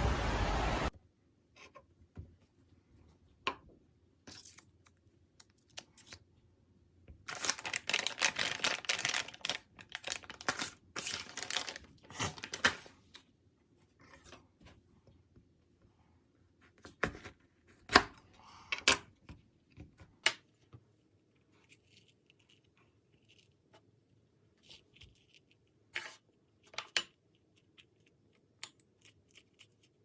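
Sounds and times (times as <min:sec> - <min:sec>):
crackly rustling and scraping: 0:07.3 - 0:13.3, 0:19.2 - 0:30.0.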